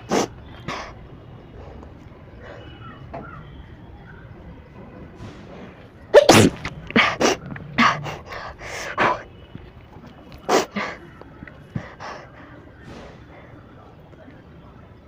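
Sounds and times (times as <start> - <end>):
person sneezing: 6.2 - 8.0.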